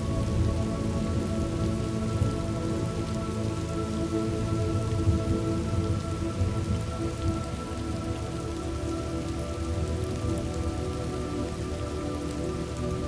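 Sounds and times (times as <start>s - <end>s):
continuous low rumble: 0.0s - 13.0s
steady rain: 0.0s - 13.0s.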